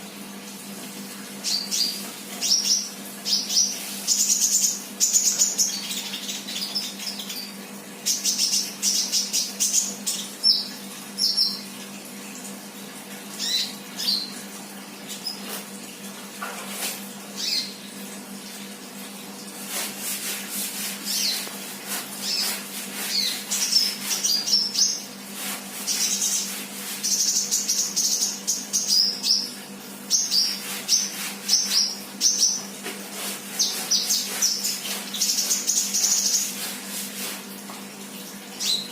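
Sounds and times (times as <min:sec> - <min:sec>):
bird chirping and twittering: 0:01.4 - 0:11.6, 0:13.4 - 0:14.4, 0:17.4 - 0:17.8, 0:21.1 - 0:21.5, 0:22.2 - 0:25.1, 0:25.9 - 0:29.5, 0:30.1 - 0:32.6, 0:33.6 - 0:36.6, 0:38.6 - 0:38.9.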